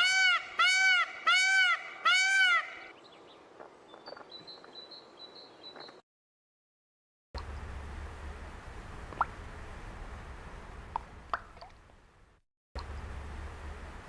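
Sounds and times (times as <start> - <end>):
bird honking calls: 0.0 - 2.9.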